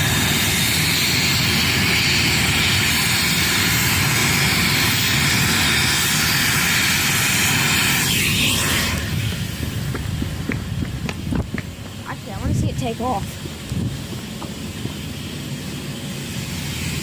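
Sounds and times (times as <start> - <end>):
helicopter engine and rotor: 0.0 - 8.0.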